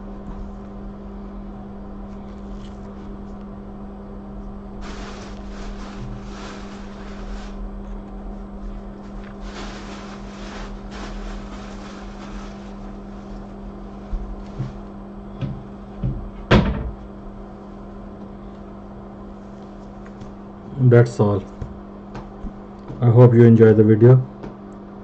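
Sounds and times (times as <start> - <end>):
electrical hum: 0.0 - 25.0
knocks on a workbench: 15.4 - 17.0.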